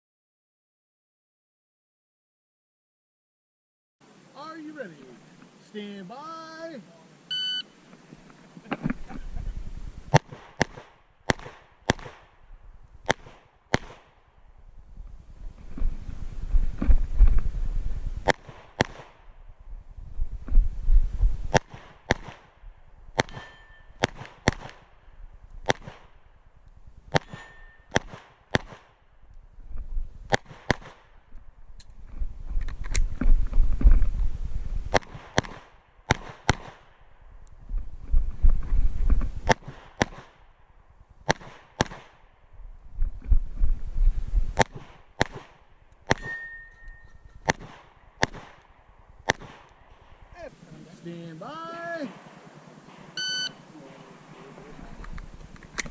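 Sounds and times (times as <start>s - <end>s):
brief high ring: 7.3s - 7.6s, 23.4s - 24.0s, 46.2s - 47.3s, 53.2s - 53.6s
pistol shots: 10.1s - 12.3s, 13.0s - 14.1s, 18.2s - 19.2s, 21.5s - 22.5s, 23.2s - 25.0s, 25.6s - 26.2s, 27.1s - 29.0s, 30.3s - 31.1s, 34.9s - 36.9s, 39.5s - 40.4s, 41.2s - 42.2s, 44.6s - 46.6s, 47.4s - 50.2s, 52.0s - 54.9s.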